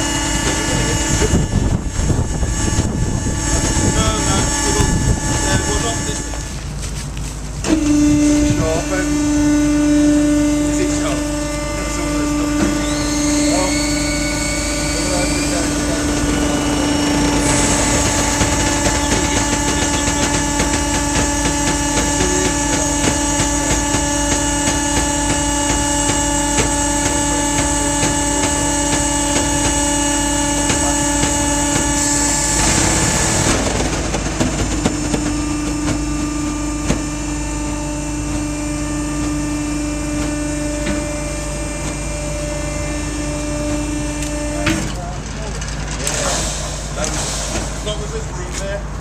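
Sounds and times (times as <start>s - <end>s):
hydraulic power unit humming: 0.0s - 49.0s.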